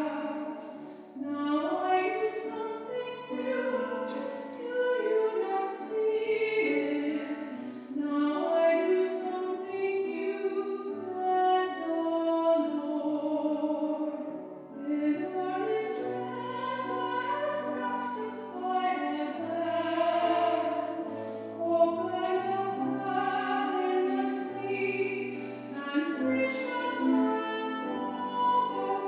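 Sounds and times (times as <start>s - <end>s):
voices singing sacred song: 15.0s - 29.0s.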